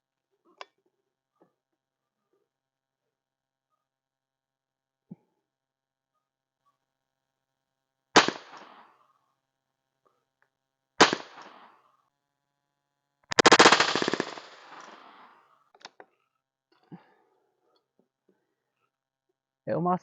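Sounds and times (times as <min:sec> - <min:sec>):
air rifle shots: 0:08.2 - 0:08.8, 0:11.0 - 0:11.7, 0:13.3 - 0:15.4
rapid rattling burst: 0:11.0 - 0:11.6, 0:13.3 - 0:15.3.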